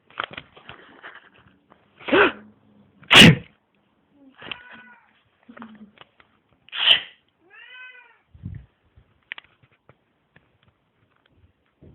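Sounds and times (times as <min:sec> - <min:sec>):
person sneezing: 0:02.0 - 0:02.5, 0:03.1 - 0:03.5, 0:06.7 - 0:07.2
cat meowing: 0:04.4 - 0:05.1, 0:06.8 - 0:08.3.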